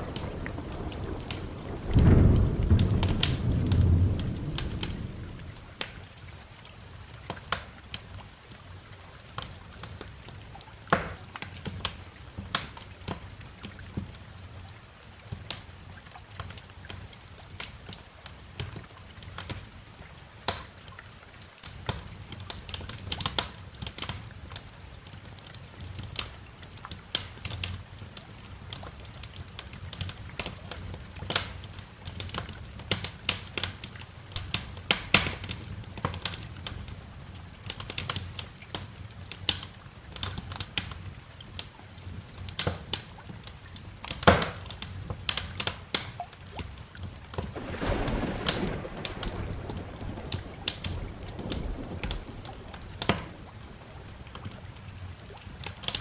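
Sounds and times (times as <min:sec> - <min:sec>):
low fire rumble: 0:00.0 - 0:08.5, 0:25.8 - 0:56.0
wood fire crackling: 0:00.0 - 0:14.4, 0:16.4 - 0:56.0.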